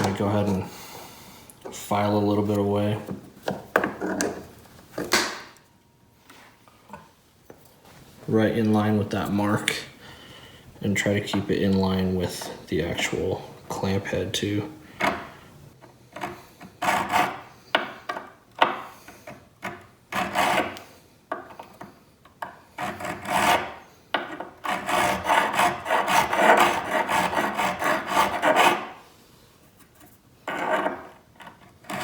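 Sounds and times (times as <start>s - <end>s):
hand file rasping: 16.2s - 17.9s, 20.1s - 20.8s, 22.8s - 29.0s, 30.5s - 32.0s.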